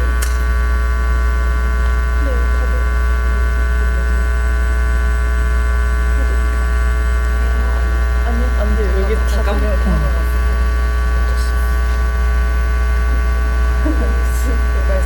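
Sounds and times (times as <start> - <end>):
mains hum: 0.0 - 15.0.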